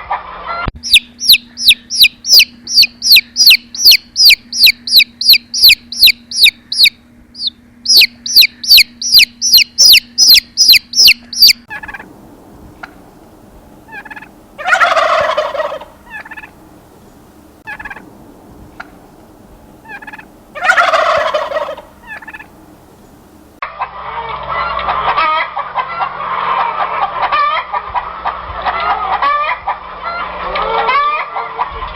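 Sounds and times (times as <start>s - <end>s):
turkeys gobbling: 0.1s - 31.9s
bird chirping high: 0.8s - 12.0s, 13.6s - 23.5s
short faint calls: 5.3s - 23.6s.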